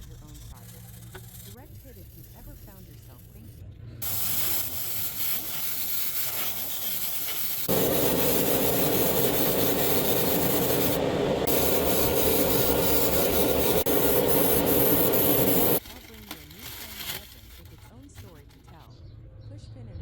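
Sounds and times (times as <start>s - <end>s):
abrasive rubbing like sanding: 4.0s - 15.8s.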